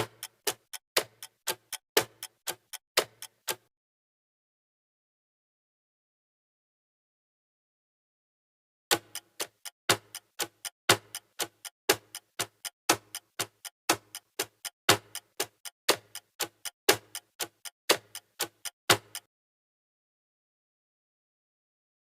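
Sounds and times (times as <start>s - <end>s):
clock ticking: 0.0s - 3.7s, 8.9s - 19.3s.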